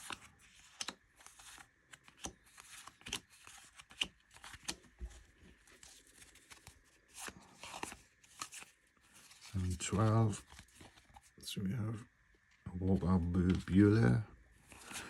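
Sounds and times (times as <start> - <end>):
trading cards flipped through: 0.0 - 11.4, 13.4 - 15.0.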